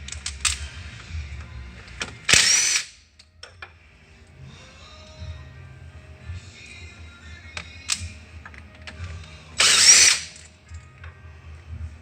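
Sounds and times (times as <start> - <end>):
impact driver running: 9.6 - 10.3.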